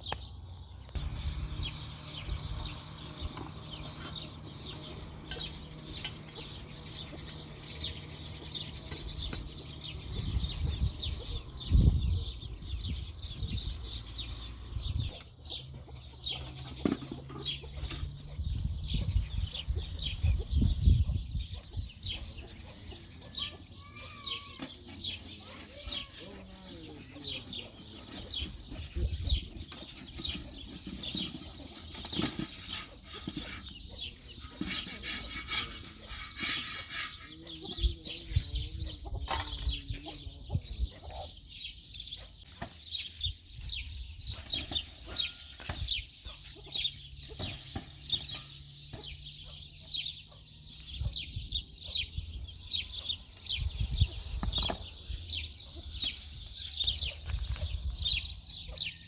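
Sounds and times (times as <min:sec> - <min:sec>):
birds chirping: 0:00.0 - 0:59.0.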